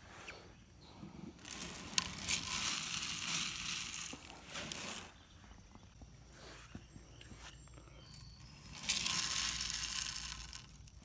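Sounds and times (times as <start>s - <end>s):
rustling crackling noise: 1.3s - 5.2s, 8.4s - 11.0s.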